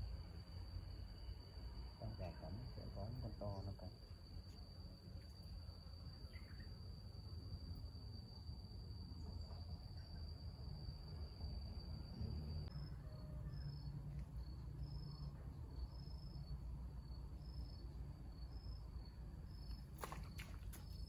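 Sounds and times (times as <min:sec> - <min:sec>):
insect trilling and chirping: 0:00.4 - 0:08.6.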